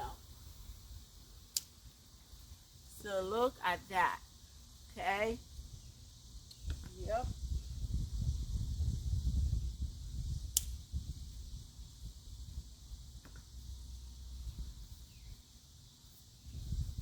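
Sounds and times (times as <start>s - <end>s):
steady high hiss: 0.0s - 17.0s
sharp click: 1.5s - 1.7s, 10.5s - 10.8s.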